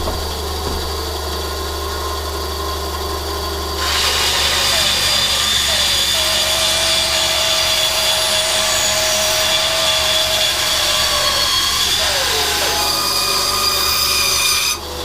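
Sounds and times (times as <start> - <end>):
band saw cutting wood: 3.7 - 15.0.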